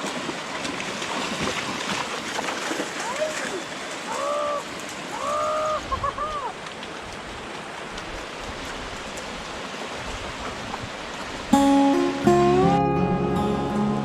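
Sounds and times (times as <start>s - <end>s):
creek water rushing: 0.0s - 14.0s
music: 11.6s - 14.0s.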